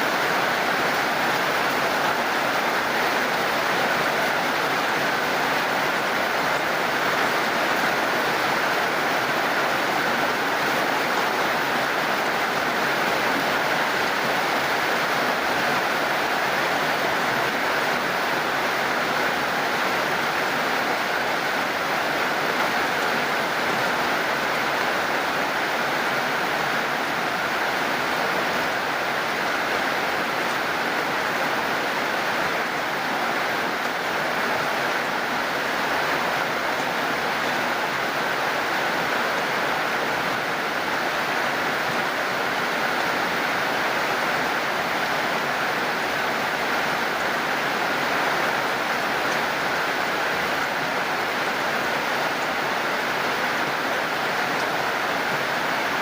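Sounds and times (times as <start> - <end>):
heavy rain falling: 0.0 - 56.0.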